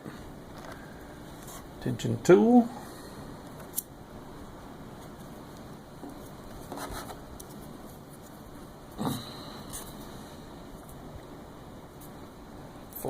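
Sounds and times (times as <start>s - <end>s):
scraping and handling sounds: 4.9s - 8.7s.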